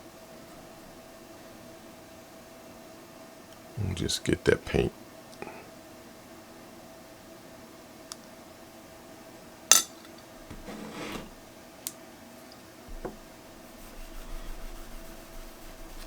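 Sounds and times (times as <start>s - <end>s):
rubbing: 10.5s - 11.4s, 13.6s - 16.0s.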